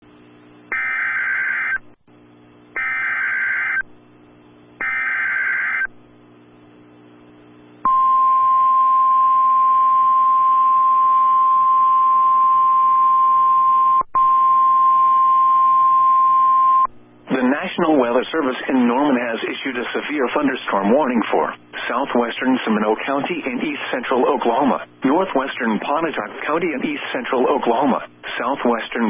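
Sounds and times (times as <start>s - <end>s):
steady warning alarm tone: 0.7s - 1.8s, 2.8s - 3.8s, 4.8s - 5.9s
faint radio hiss: 17.2s - 29.0s.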